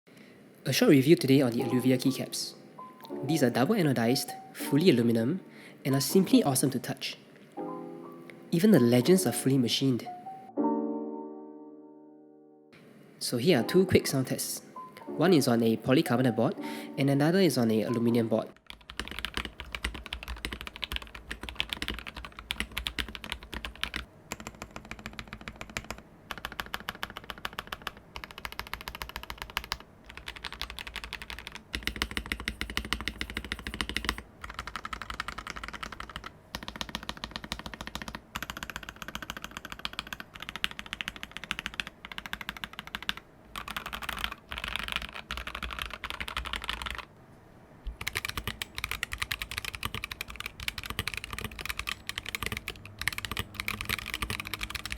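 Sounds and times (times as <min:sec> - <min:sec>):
fast mechanical keyboard typing: 0:17.9 - 0:47.1, 0:48.0 - 0:54.9.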